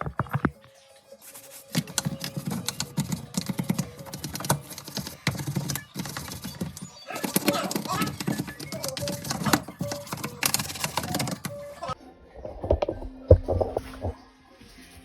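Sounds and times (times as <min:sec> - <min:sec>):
parts clicking and clattering: 0:01.7 - 0:12.0.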